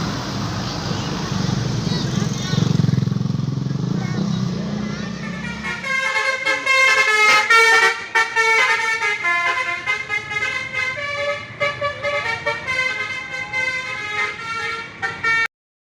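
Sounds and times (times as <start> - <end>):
musical bus air horn: 4.8 - 15.5.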